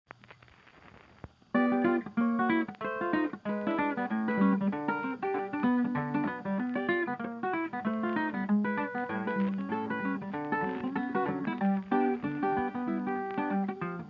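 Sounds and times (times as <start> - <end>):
plucked acoustic guitar music: 1.5 - 14.0.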